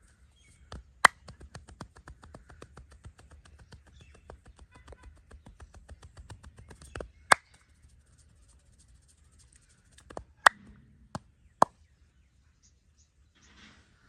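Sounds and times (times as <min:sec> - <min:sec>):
light patter of massage taps: 0:00.6 - 0:10.3.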